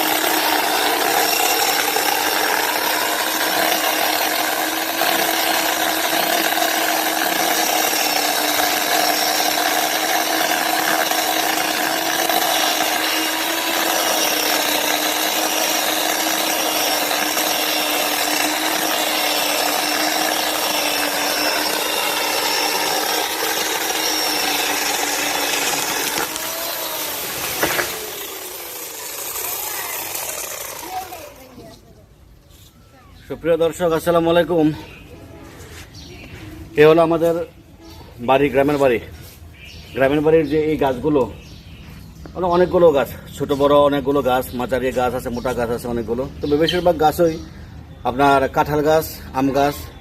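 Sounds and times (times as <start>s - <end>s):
chainsaw cutting tree trunk: 0.0s - 31.8s.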